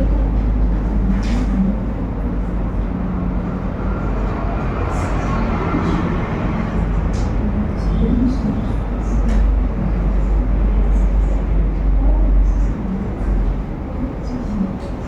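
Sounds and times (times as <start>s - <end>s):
classroom background rumble: 0.0s - 15.0s.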